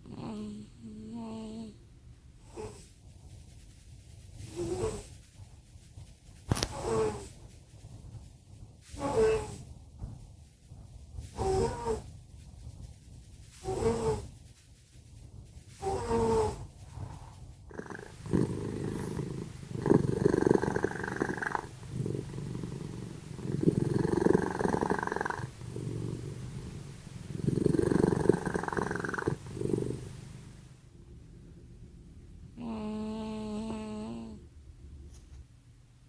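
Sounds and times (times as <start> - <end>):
cat snoring: 0.0 - 1.8, 4.4 - 5.2, 6.5 - 7.3, 8.9 - 9.7, 11.2 - 12.1, 13.6 - 14.3, 15.8 - 30.7, 32.5 - 34.5.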